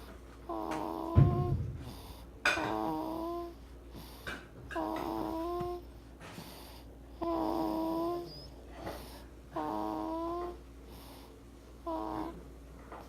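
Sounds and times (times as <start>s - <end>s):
tuneful snoring: 0.5s - 3.6s, 4.7s - 5.8s, 7.2s - 10.6s, 11.8s - 12.4s.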